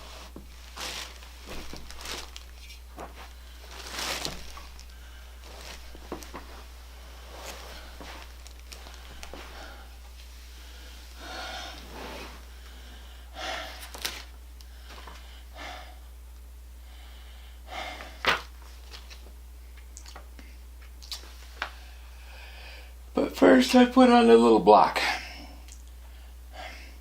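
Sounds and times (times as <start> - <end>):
man breathing out heavily: 7.5 - 14.0, 14.7 - 16.2, 16.8 - 18.3, 25.0 - 27.0.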